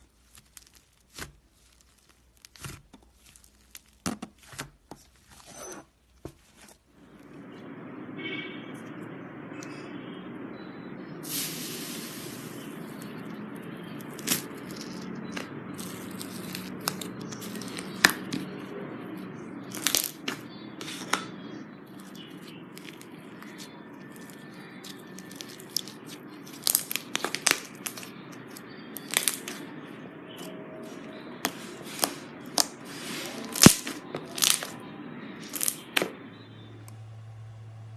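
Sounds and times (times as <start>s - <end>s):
slime popping and crackling: 0.0s - 5.4s, 13.9s - 18.7s, 19.6s - 21.2s, 21.9s - 29.7s, 30.3s - 34.8s, 35.4s - 36.1s
hissy rustle: 11.2s - 12.7s.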